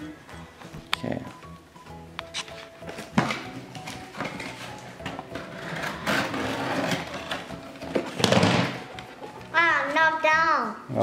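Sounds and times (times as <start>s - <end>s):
packaging clicks and knocks: 3.1s - 9.0s.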